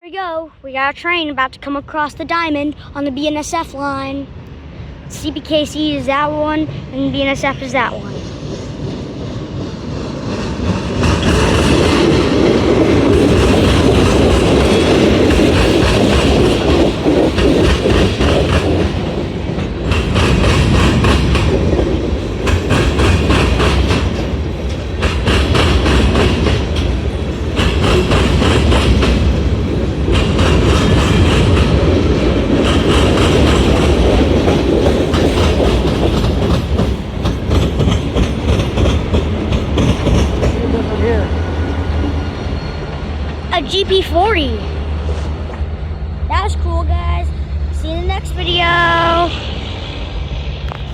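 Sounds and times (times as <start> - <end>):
low train rumble: 0.0 - 50.9
train wheels clattering: 7.3 - 45.7.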